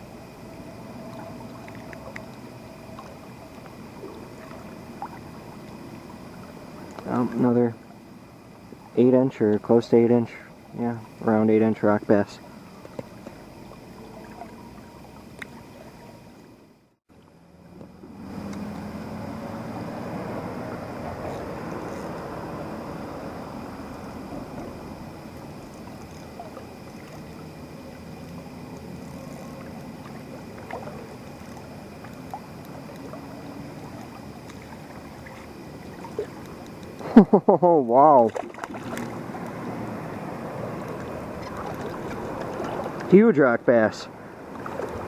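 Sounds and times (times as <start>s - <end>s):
flowing river water: 0.0s - 45.0s
faint ticks: 1.6s - 5.2s, 15.3s - 15.7s, 17.2s - 18.9s, 25.6s - 27.2s, 30.6s - 37.2s.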